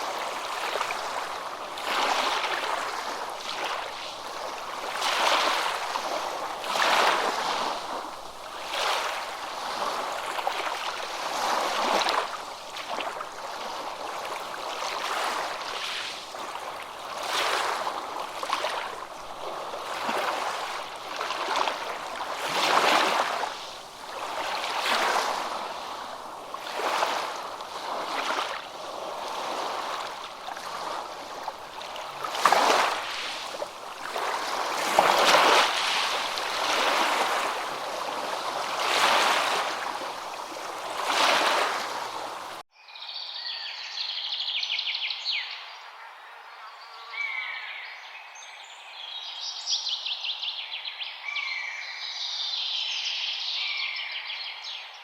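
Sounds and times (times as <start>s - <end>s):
rushing water: 0.0s - 42.6s.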